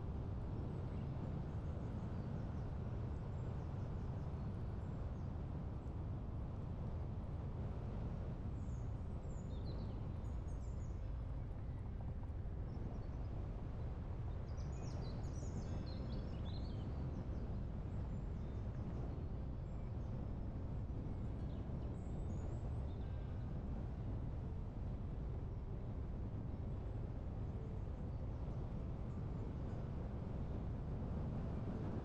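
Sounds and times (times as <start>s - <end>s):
wind blowing rumble: 17.0s - 32.0s.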